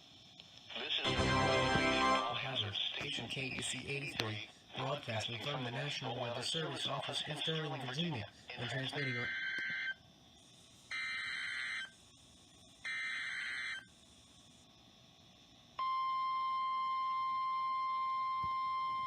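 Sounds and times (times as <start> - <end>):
steady alarm tone: 1.1 - 2.4.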